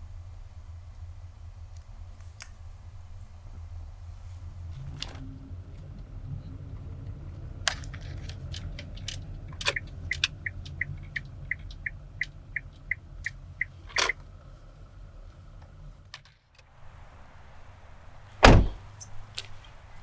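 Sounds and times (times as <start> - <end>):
low steady car hum: 0.0 - 20.0
sharp clicks: 7.7 - 14.2
car warning chime dinging: 9.7 - 14.2.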